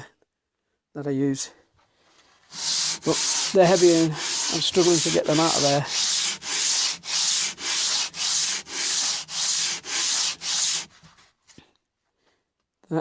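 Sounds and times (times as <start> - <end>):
hand plane rubbed on abrasive sheet: 2.4 - 11.3.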